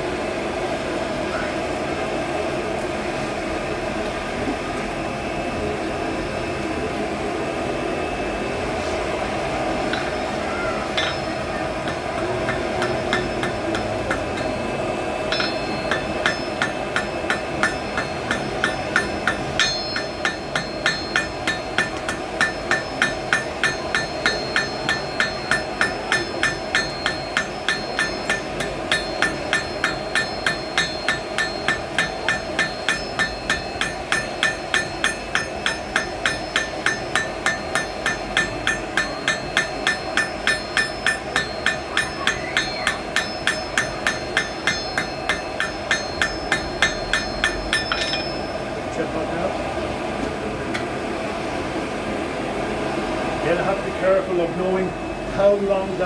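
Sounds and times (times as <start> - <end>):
hammer striking iron on anvil: 9.9 - 48.6.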